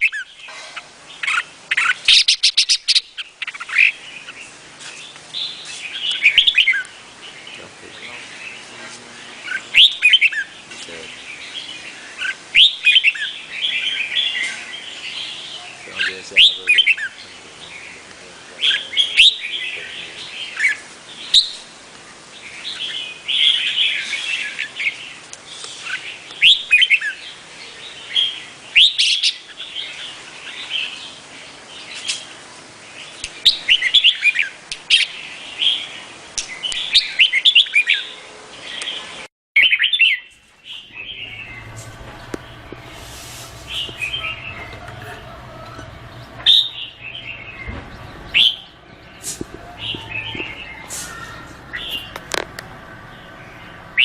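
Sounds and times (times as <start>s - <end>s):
bird whistling song: 0.0s - 4.4s, 5.4s - 6.9s, 9.5s - 10.6s, 11.4s - 15.8s, 20.4s - 21.7s, 25.8s - 27.2s, 28.1s - 31.1s, 39.6s - 42.9s, 43.6s - 52.2s.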